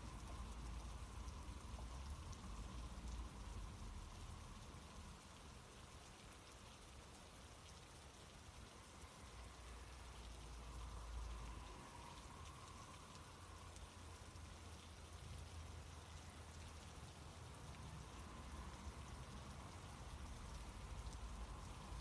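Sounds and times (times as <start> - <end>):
faint steady hiss: 0.0 - 22.0.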